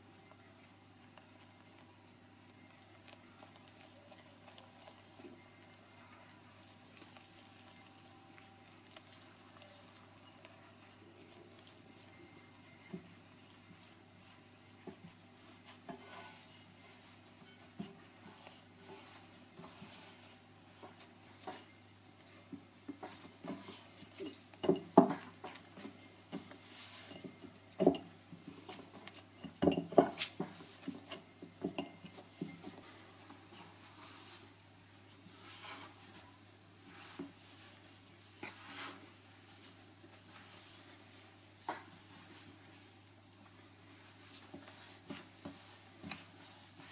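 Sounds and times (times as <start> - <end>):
kitchen utensils and dishes clinking: 15.8 - 16.6, 17.3 - 21.7, 23.0 - 32.8.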